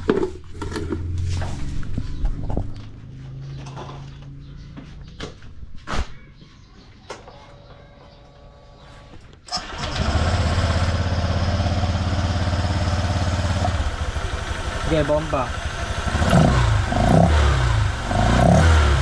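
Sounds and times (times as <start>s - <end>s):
scooter engine idling: 9.5s - 18.1s.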